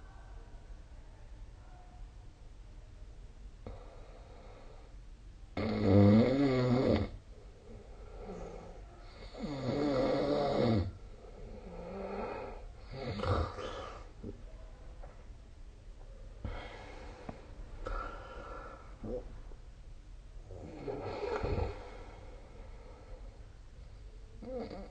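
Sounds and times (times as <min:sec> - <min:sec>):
quiet breaths: 0:00.0 - 0:24.9
person snoring: 0:09.3 - 0:14.1, 0:20.5 - 0:22.2.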